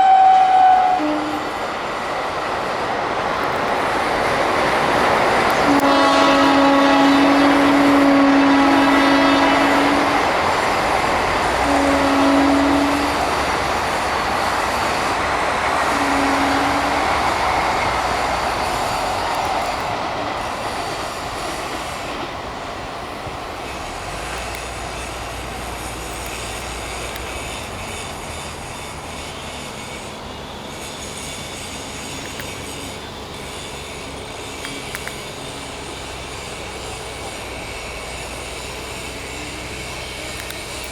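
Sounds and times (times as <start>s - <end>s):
locomotive horn blasts: 0.0s - 1.6s, 5.4s - 40.9s
train rumbling over bridge: 0.0s - 40.9s.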